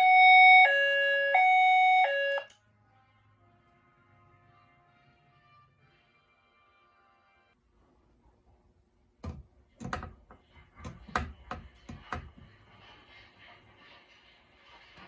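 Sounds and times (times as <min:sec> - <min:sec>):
sharp clicks and knocks: 0:09.2 - 0:12.6.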